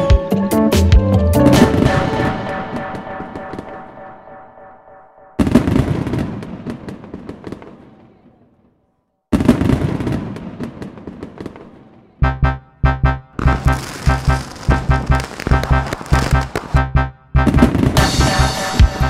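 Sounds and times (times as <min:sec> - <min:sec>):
fireworks banging and crackling: 0:01.6 - 0:04.0, 0:05.4 - 0:08.6, 0:09.3 - 0:12.2, 0:13.4 - 0:18.4
music with thumping beat: 0:12.2 - 0:19.0.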